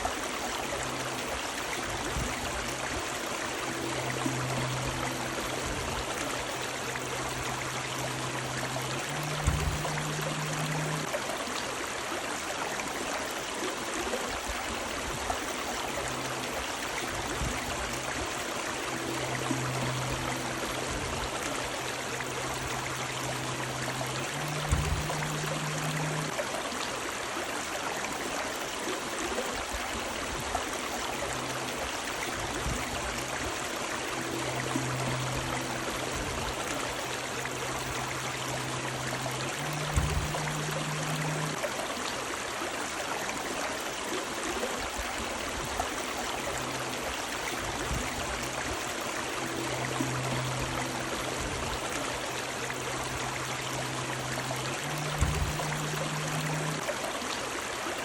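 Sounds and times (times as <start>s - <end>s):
river water rushing: 0.0s - 58.0s
faint low hum: 0.1s - 11.1s, 15.5s - 26.4s, 31.2s - 41.7s, 46.2s - 56.9s.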